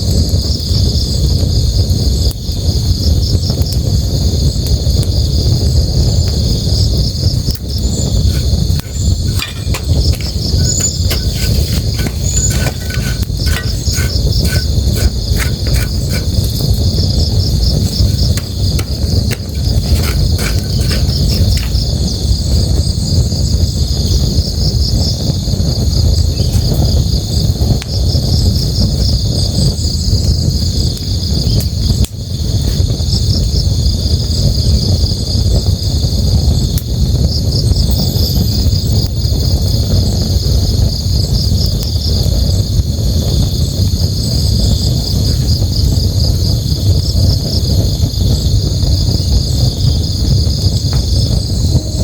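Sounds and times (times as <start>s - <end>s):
night insects trilling: 0.4s - 52.0s
campfire crackling and popping: 1.6s - 33.0s.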